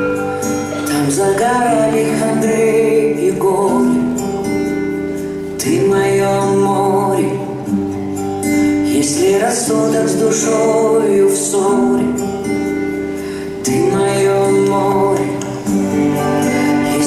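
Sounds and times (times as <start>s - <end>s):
person singing: 0.0s - 17.0s
sustained instrumental chords: 12.2s - 17.0s.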